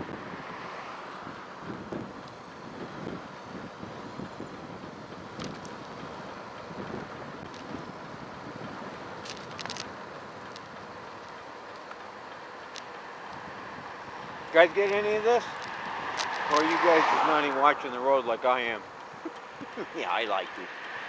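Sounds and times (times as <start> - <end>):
wind rushing over microphone: 0.0 - 9.2, 13.3 - 17.8.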